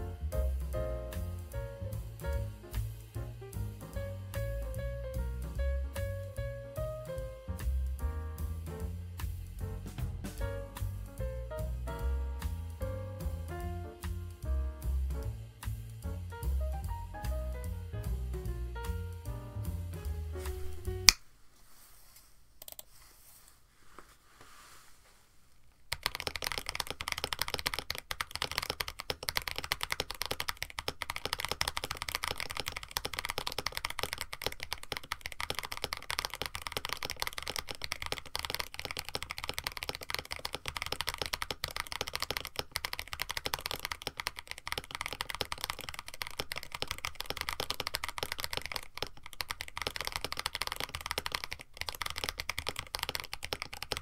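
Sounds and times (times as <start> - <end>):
fast typing on mechanical keyboard: 25.9 - 54.0.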